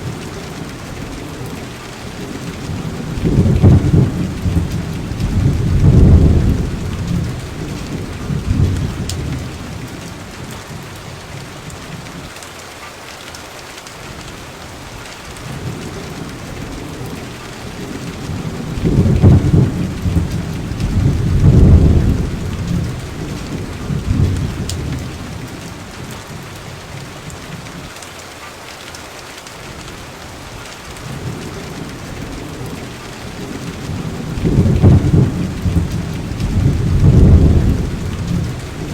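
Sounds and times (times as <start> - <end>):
thunder rumbling: 0.0 - 12.0, 15.5 - 27.8, 31.0 - 38.9
steady rain: 0.0 - 38.9.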